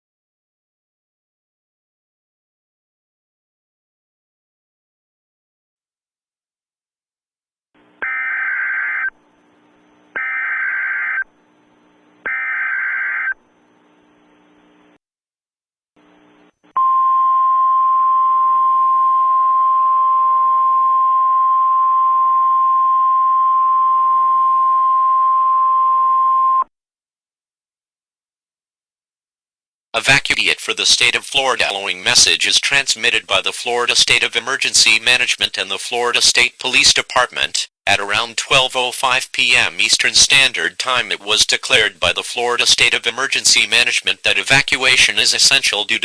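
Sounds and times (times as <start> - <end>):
short data bursts: 7.8 - 15.0
steady single-pitch attention tone: 16.8 - 26.7.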